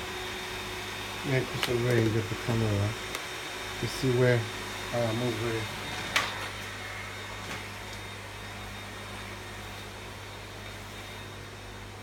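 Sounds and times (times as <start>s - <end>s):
vacuum cleaner running: 0.0s - 12.0s.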